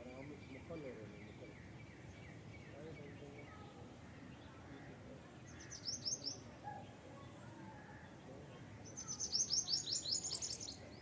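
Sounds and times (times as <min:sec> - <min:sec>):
small bird chirping: 0:05.4 - 0:06.4, 0:08.8 - 0:11.0.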